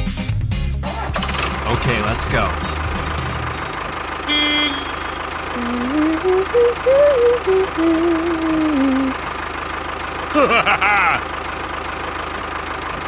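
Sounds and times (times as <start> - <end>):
low engine-like drone: 1.7 - 10.0
wavering tune of held notes: 5.6 - 9.3.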